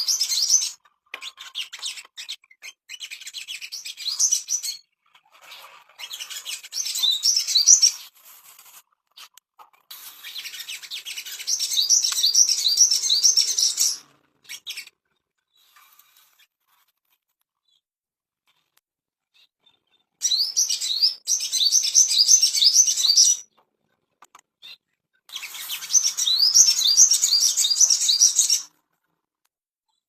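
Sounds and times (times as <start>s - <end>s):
songbird chirping: 0.0s - 0.8s, 6.0s - 8.1s, 10.2s - 15.8s, 19.3s - 23.6s, 24.2s - 28.7s.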